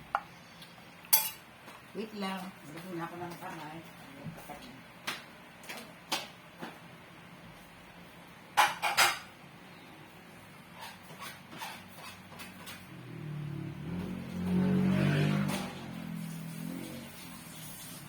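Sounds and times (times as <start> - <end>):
dishes and tableware clinking: 1.1 - 1.4, 8.6 - 9.3.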